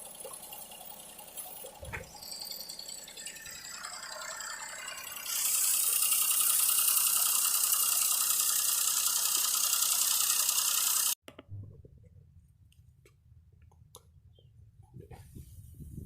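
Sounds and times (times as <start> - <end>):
light mechanical rattle: 0.0 - 11.2.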